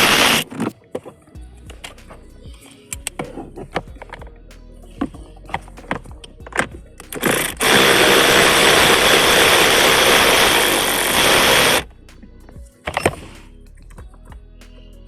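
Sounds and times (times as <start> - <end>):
handheld power tool running: 0.0 - 0.4, 7.2 - 11.8.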